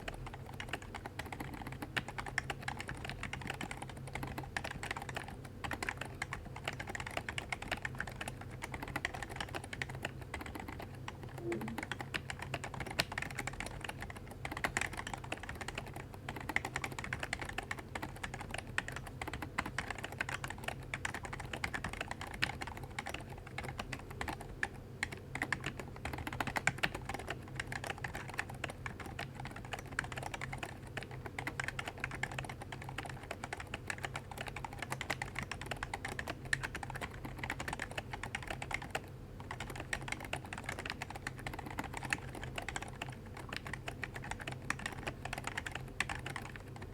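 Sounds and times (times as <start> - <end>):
fast keyboard typing: 0.0 - 46.9.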